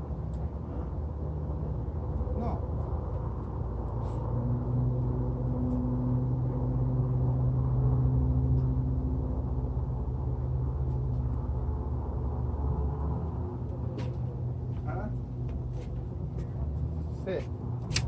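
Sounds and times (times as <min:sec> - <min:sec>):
vehicle engine running: 0:00.0 - 0:17.9.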